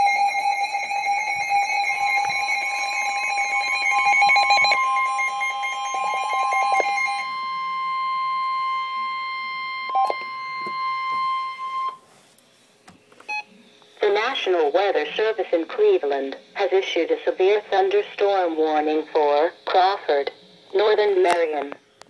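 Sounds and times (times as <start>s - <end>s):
two-tone alarm: 0.0s - 12.0s.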